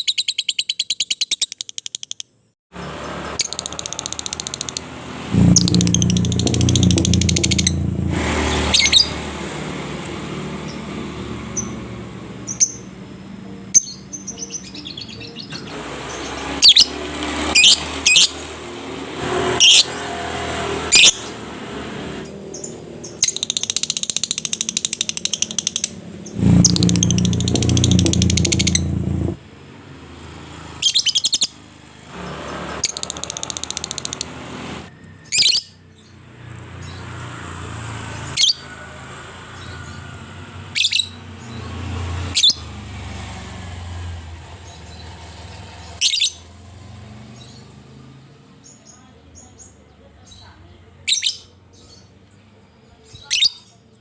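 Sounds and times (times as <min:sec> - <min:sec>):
lovebird chirping and trilling: 0:00.0 - 0:02.2, 0:05.5 - 0:07.9, 0:08.6 - 0:09.2, 0:13.8 - 0:16.9, 0:17.5 - 0:18.4, 0:19.6 - 0:19.9, 0:22.5 - 0:29.0, 0:35.2 - 0:35.8, 0:40.8 - 0:41.2, 0:46.0 - 0:46.4.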